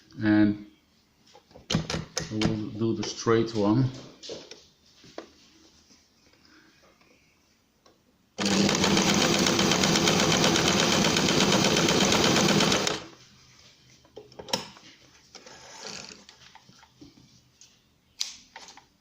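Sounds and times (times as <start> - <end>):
sewing machine stitching: 8.4 - 13.1.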